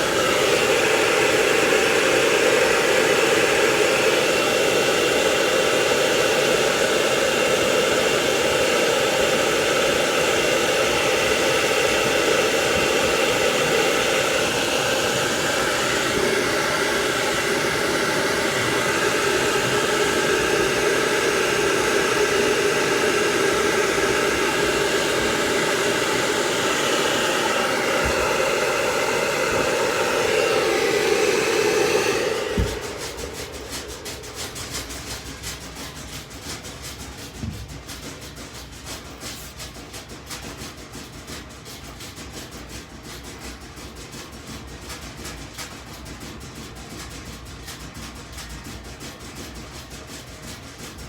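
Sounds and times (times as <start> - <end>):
hair dryer blowing: 0.0 - 37.5.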